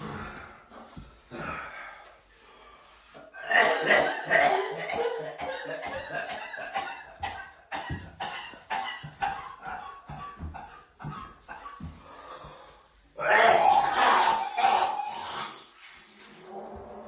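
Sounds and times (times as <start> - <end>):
person coughing: 3.4 - 8.4.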